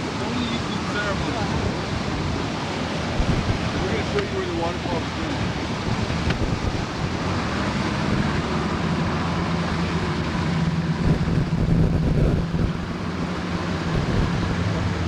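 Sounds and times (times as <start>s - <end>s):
boat engine humming: 0.0s - 15.0s
wind on microphone: 3.1s - 3.9s, 5.4s - 8.5s, 10.9s - 14.9s.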